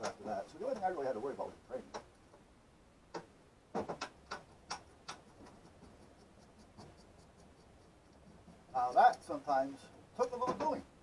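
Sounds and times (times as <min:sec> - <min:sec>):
light clicks and knocks: 0:03.1 - 0:09.3, 0:10.2 - 0:10.8.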